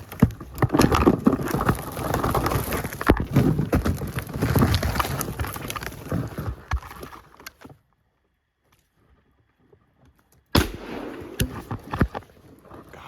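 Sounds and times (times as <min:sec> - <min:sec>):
gunshot: 0:10.6 - 0:12.1.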